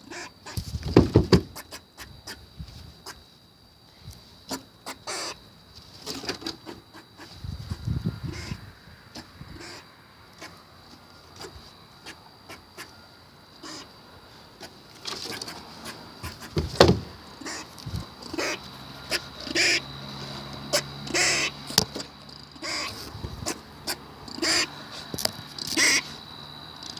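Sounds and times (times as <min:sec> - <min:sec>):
squirrel harsh calls: 0:00.0 - 0:00.6, 0:01.5 - 0:02.4, 0:04.5 - 0:05.4, 0:06.6 - 0:08.6, 0:09.2 - 0:10.6, 0:11.4 - 0:14.0, 0:14.6 - 0:26.2.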